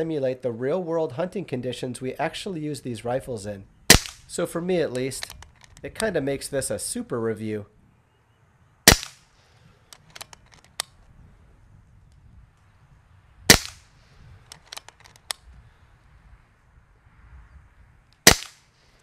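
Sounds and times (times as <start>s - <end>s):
air rifle shot crack: 3.9s - 4.3s, 8.9s - 9.3s, 13.5s - 13.9s, 18.2s - 18.7s
light clicks: 9.9s - 11.0s, 14.4s - 15.4s.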